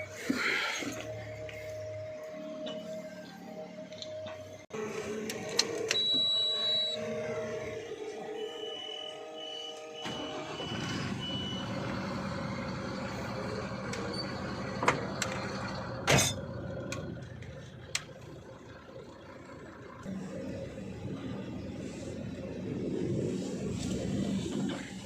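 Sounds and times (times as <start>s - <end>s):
reversing alarm beeping: 5.9s - 16.0s
diesel truck engine running: 10.1s - 25.0s.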